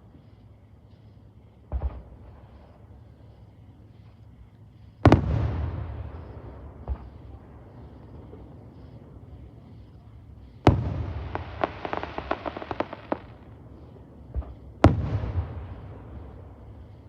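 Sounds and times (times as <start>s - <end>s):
fireworks crackling pops: 0.8s - 17.0s
fireworks bangs: 5.1s - 13.5s, 14.3s - 16.9s.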